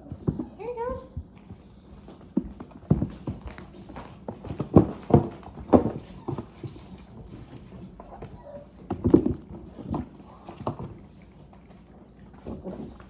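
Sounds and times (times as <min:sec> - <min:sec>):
puppies playing with knocks and taps: 0:00.0 - 0:13.0.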